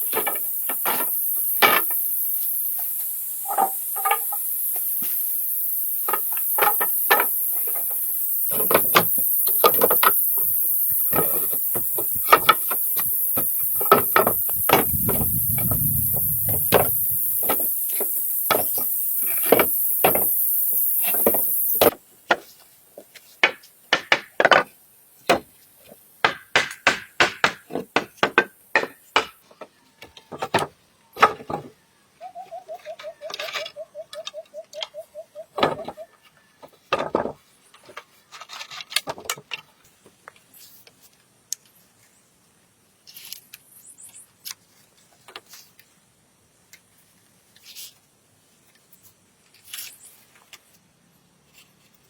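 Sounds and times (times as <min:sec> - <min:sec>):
evenly pulsing buzz: 0:06.6 - 0:21.9
hand tool knocking on wood: 0:26.2 - 0:29.4.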